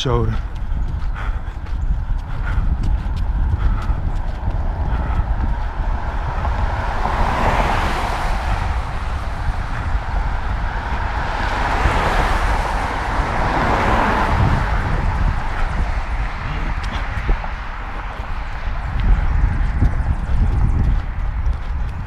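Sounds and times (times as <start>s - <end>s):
road traffic passing: 0.0s - 22.0s
wind rumble on microphone: 0.0s - 22.0s.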